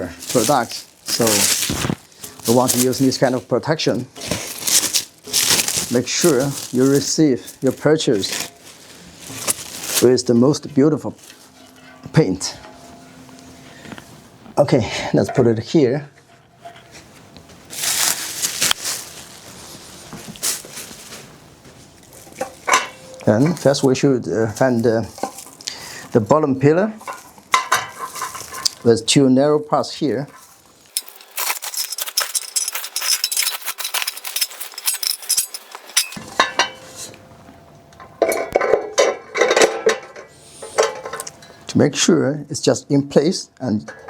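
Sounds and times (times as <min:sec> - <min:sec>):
metal parts clinking and rattling: 0:00.0 - 0:03.4, 0:04.2 - 0:10.1, 0:22.1 - 0:23.9, 0:27.0 - 0:28.9, 0:30.3 - 0:36.8, 0:38.0 - 0:41.5
scuffing noise: 0:00.0 - 0:03.5.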